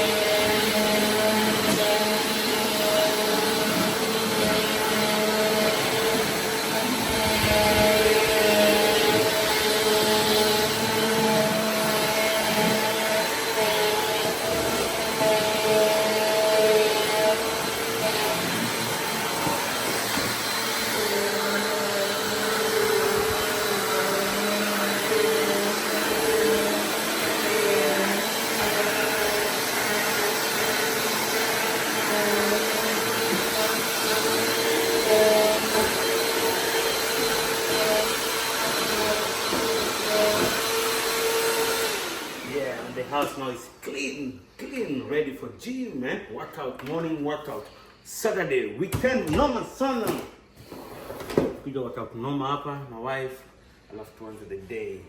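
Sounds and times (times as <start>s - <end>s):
vacuum cleaner running: 0.0s - 43.5s.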